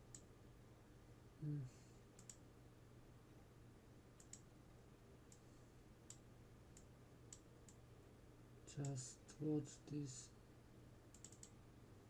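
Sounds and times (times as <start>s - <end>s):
computer mouse clicks: 0.0s - 0.3s, 2.2s - 2.4s, 4.2s - 4.5s, 6.0s - 7.8s, 11.1s - 11.6s
low steady hum: 0.0s - 12.0s.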